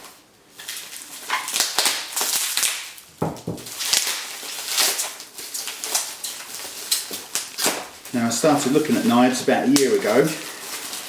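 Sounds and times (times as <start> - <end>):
packaging crinkling and rustling: 0.0 - 11.0
dull knocks: 3.2 - 3.7.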